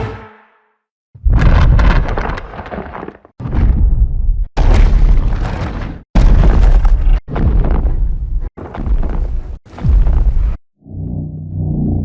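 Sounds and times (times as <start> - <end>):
deep booming impacts: 3.4 - 10.6.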